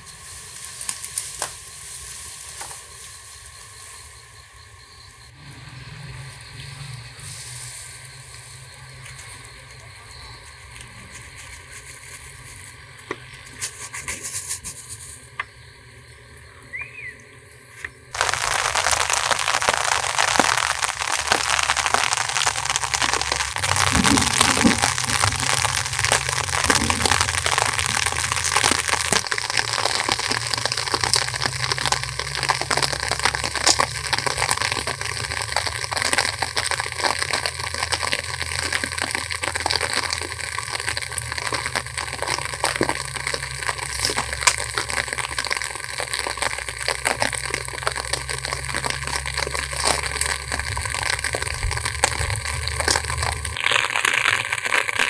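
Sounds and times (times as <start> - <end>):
heavy rain patter: 18.1 - 55.0.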